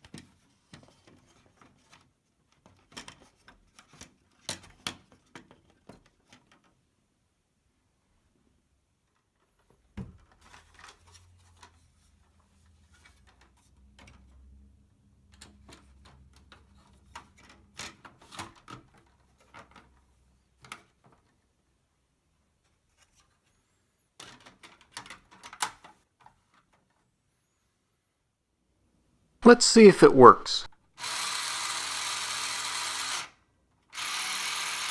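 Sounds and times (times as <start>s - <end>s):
plastic toy parts clicking: 24.2s - 26.0s.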